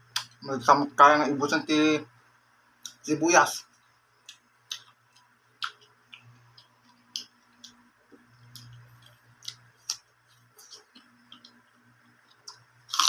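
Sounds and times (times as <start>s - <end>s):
crisp crunches of chewing onion: 12.4s - 13.0s.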